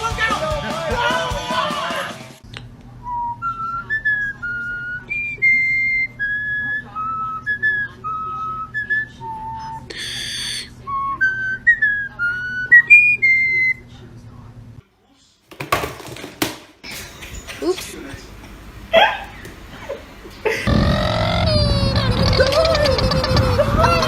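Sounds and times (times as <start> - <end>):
person whistling a tune: 3.0 - 13.8.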